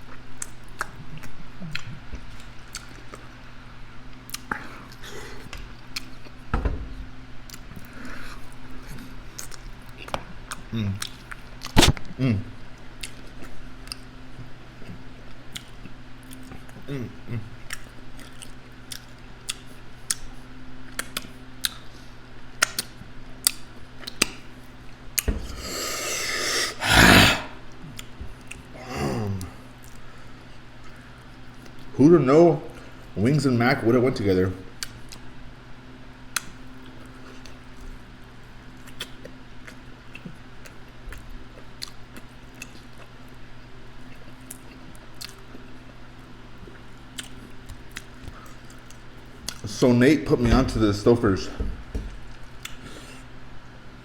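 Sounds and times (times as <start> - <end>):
faint steady hum: 0.0 - 54.0
person chewing food: 0.1 - 3.4, 7.5 - 11.9, 17.6 - 20.4, 38.7 - 43.4, 44.0 - 49.6, 52.3 - 53.3
wet chewing: 17.6 - 20.3.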